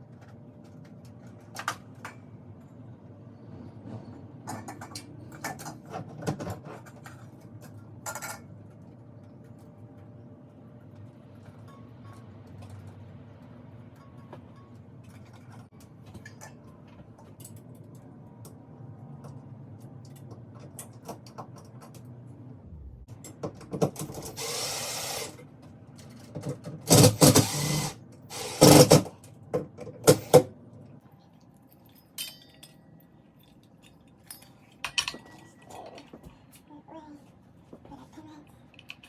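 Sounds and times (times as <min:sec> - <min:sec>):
faint low hum: 0:22.5 - 0:23.2
power drill bursts: 0:24.3 - 0:25.4, 0:26.9 - 0:29.1.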